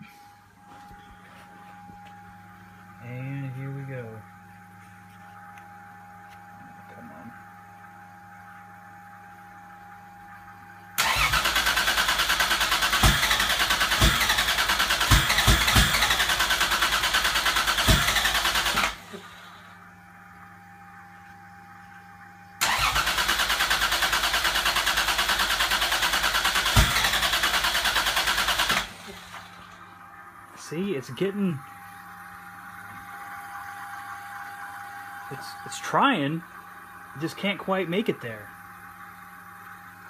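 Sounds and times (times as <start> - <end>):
engine cranking on starter: 11.0 - 19.6, 22.6 - 29.8
fuel pump hum: 11.0 - 40.0
engine sharp pops: 13.0 - 16.4, 17.8 - 19.0, 26.6 - 27.5.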